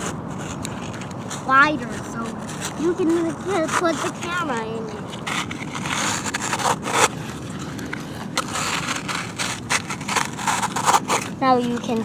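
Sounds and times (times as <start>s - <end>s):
toy digger scraping through dirt: 0.0s - 12.0s.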